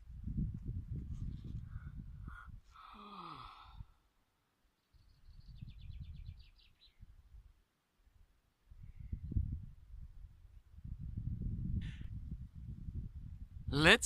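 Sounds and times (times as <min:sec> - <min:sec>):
wind rumbling on microphone: 0:00.0 - 0:02.7, 0:05.0 - 0:07.5, 0:08.7 - 0:13.8.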